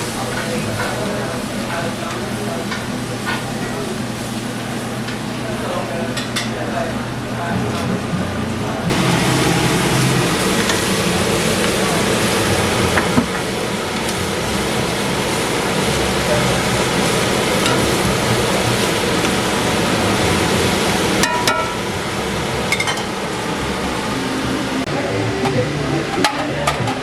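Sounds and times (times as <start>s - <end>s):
food sizzling in a pan: 8.9s - 24.8s.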